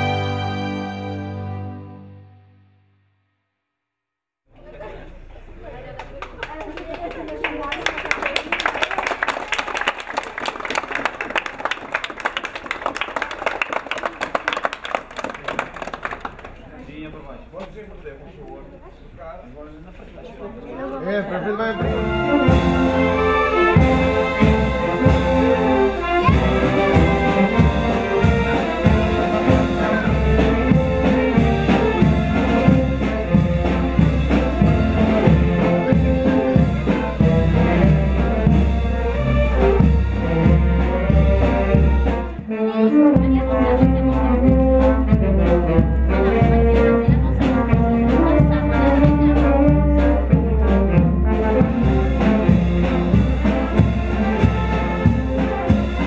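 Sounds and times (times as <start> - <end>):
live brass band music: 0.0 - 2.6, 21.4 - 56.0.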